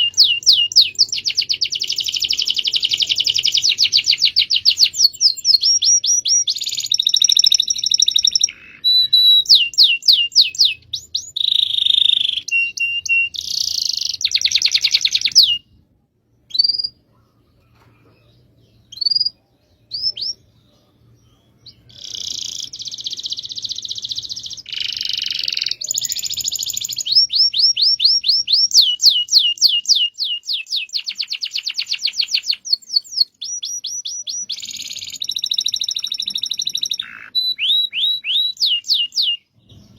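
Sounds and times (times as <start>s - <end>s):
canary singing trills: 0.0s - 39.9s
single bird chirps: 16.4s - 39.9s.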